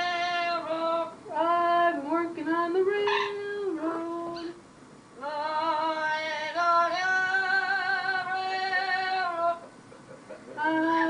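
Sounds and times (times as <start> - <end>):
parrot singing: 3.0 - 3.5.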